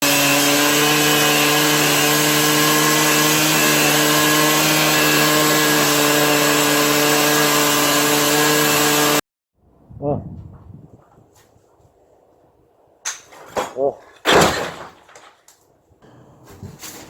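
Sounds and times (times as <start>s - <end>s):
power cutter cutting concrete: 0.0s - 9.2s.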